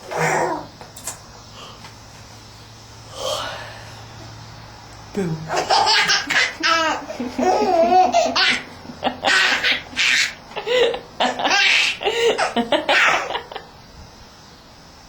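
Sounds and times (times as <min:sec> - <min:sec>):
baby laughing: 0:05.5 - 0:13.6.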